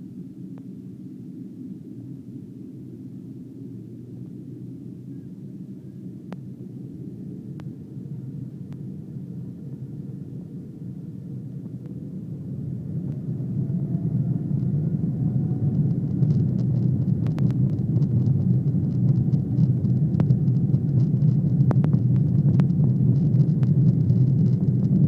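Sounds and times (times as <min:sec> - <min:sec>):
faint climbing whine: 0:00.6 - 0:25.0
jet engines rumbling: 0:04.4 - 0:25.0.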